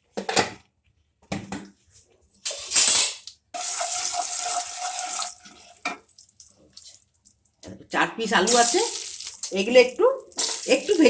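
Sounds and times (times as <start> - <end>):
potatoes sizzling in oil: 3.6 - 7.0, 8.3 - 11.0.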